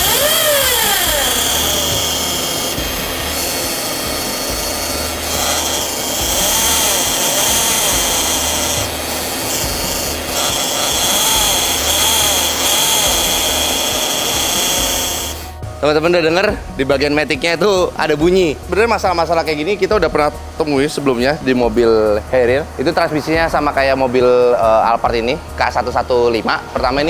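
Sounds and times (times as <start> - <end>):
whine rising and falling in pitch: 0.0 - 16.4
transmission whine and rubbing: 0.0 - 27.0.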